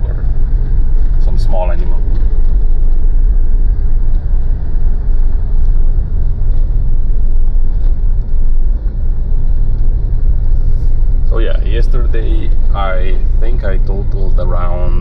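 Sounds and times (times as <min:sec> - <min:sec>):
engine and tyres on snow: 0:00.0 - 0:15.0.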